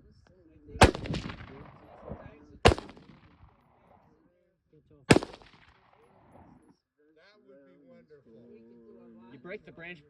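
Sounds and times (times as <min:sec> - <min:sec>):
gunshots with echo: 0:00.8 - 0:04.0, 0:05.1 - 0:06.5.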